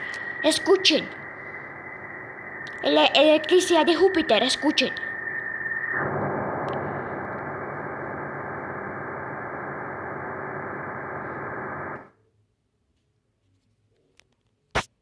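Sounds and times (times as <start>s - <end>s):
muffled static hiss: 0.0s - 15.0s.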